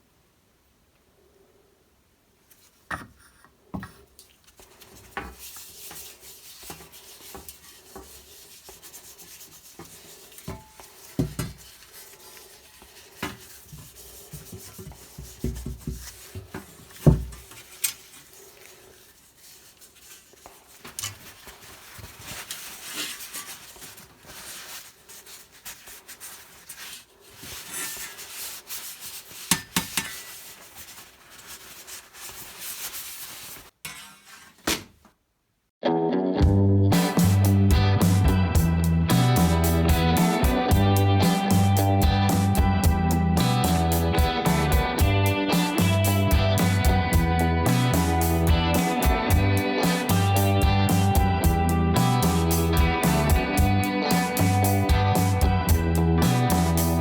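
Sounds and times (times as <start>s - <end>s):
hand rubbing and scraping: 2.5s - 35.0s, 36.9s - 57.0s.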